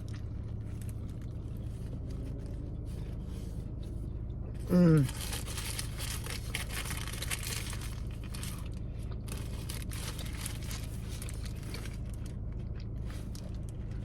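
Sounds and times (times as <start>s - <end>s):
paper wrapper crinkling: 5.1s - 12.3s
chewing with wet mouth clicks: 11.4s - 14.0s.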